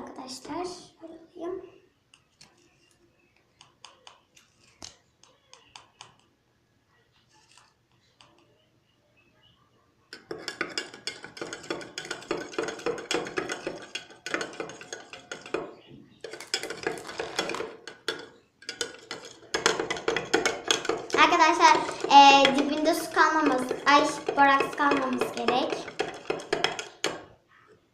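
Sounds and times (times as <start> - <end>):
spoon scraping around a bowl: 7.2 - 8.6, 10.1 - 27.3.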